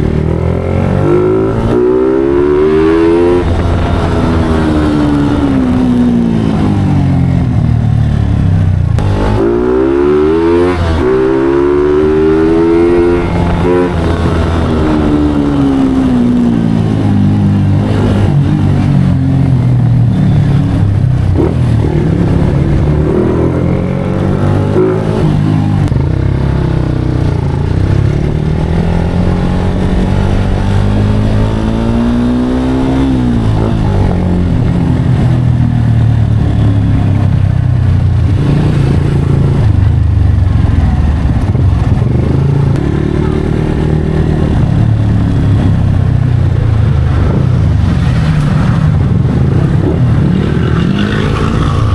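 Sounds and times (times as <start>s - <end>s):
motorcycle engine revving: 0.0s - 51.9s.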